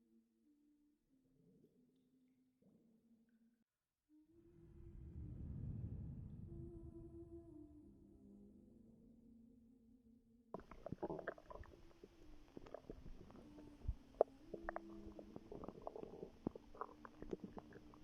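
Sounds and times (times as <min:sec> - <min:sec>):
stomach gurgling and rumbling: 0:10.5 - 0:18.0.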